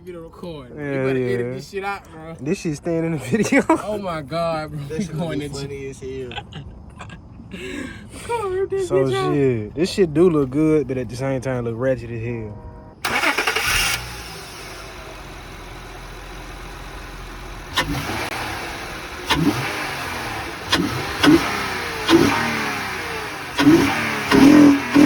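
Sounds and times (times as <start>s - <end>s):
car engine idling and revving: 12.6s - 25.0s.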